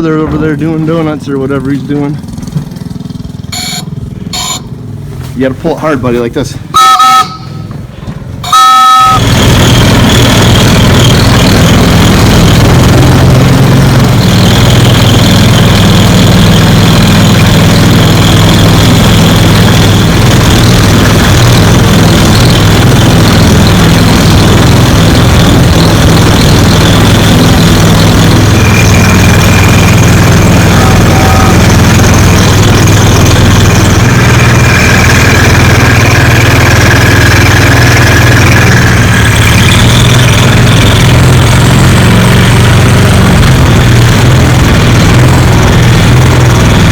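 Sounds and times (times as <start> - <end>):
small engine running: 0.8 - 5.2, 7.3 - 46.9
two-tone whistle toot: 3.5 - 4.7, 6.8 - 7.7, 8.4 - 9.3.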